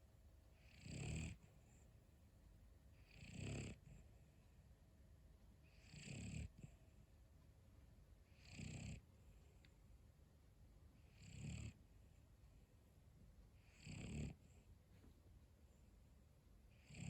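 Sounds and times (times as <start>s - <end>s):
dog snoring: 0.6s - 1.8s, 2.9s - 4.1s, 5.7s - 6.8s, 8.3s - 9.1s, 11.0s - 11.8s, 13.6s - 14.6s, 16.7s - 17.0s.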